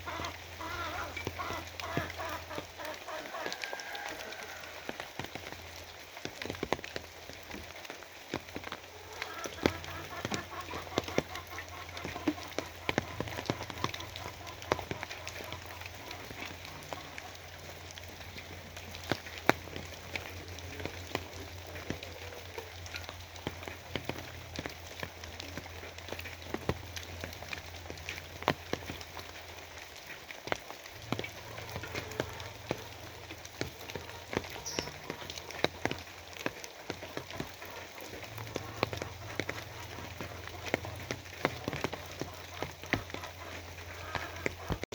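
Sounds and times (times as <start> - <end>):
rain drops ticking on hard surface: 0.0 - 44.9.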